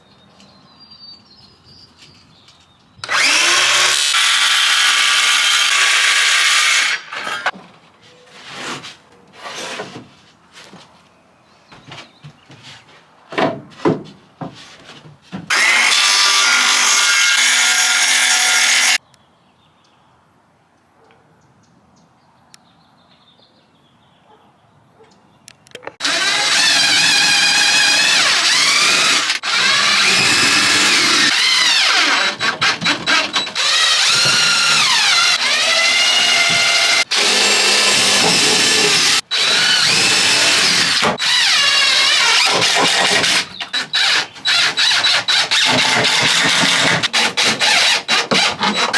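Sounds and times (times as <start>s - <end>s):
power drill driving into wood: 3.0s - 7.5s, 15.5s - 19.0s, 26.0s - 48.9s.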